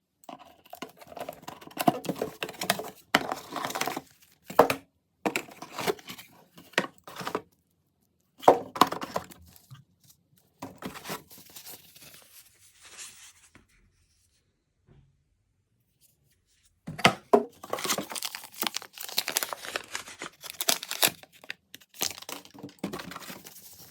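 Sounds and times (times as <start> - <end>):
box being handled: 17.0 - 21.4
packaging tearing: 17.6 - 23.8
wrapping crinkling: 17.6 - 23.9.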